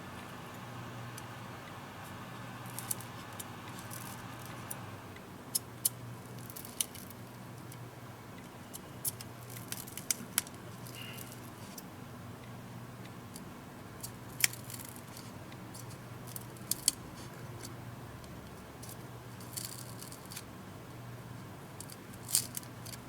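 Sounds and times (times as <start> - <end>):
steady low hum: 0.0 - 6.4.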